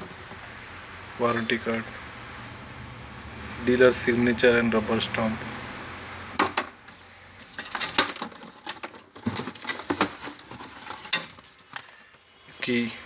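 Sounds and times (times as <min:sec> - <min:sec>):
rustling and crinkling: 0:00.0 - 0:04.2, 0:06.3 - 0:13.0.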